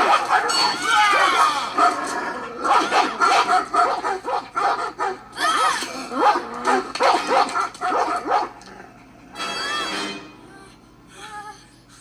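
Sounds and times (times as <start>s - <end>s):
dogs barking: 0.0s - 8.8s.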